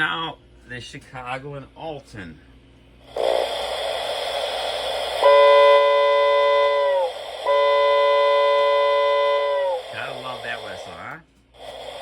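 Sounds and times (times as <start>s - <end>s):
steady hiss: 3.1s - 12.0s
toy train steam whistle: 3.2s - 11.0s.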